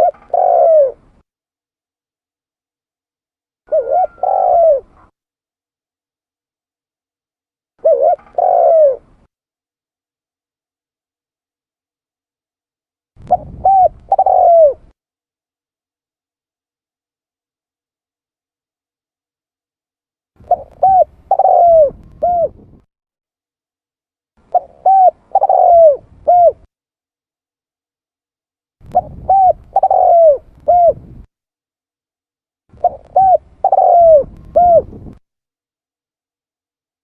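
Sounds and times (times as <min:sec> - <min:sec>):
dove cooing: 0:00.0 - 0:01.2, 0:03.7 - 0:05.1, 0:07.8 - 0:09.2, 0:13.2 - 0:14.9, 0:20.4 - 0:22.8, 0:24.5 - 0:26.7, 0:28.8 - 0:31.3, 0:32.8 - 0:35.2.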